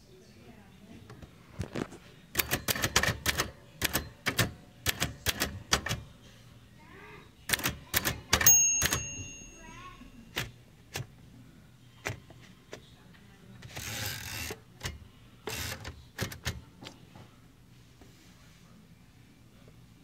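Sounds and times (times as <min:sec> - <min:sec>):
typewriter key strikes: 0:02.4 - 0:06.0, 0:07.5 - 0:09.4.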